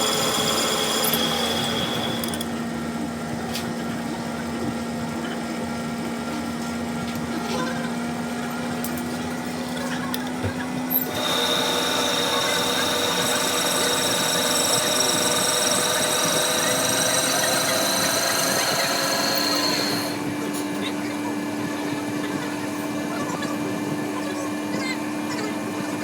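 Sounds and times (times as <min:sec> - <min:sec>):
high-pitched lathe whine: 0:00.0 - 0:02.8, 0:10.6 - 0:20.5
lathe humming: 0:00.0 - 0:03.3, 0:10.4 - 0:20.5.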